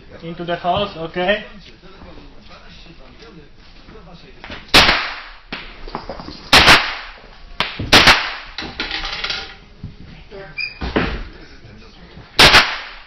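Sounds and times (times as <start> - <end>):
gunshots with ringing echo: 12.4 - 13.0.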